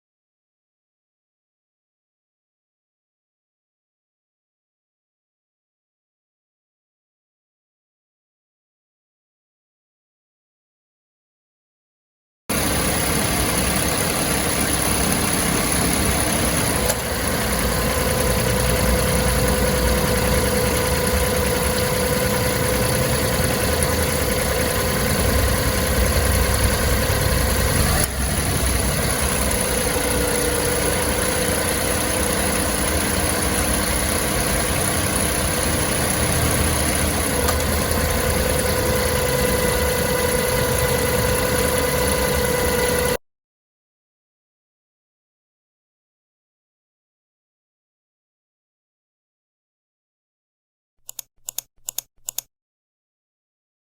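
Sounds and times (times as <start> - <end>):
belt drive abnormal noise: 12.5 - 43.2
car engine idling: 12.5 - 43.2.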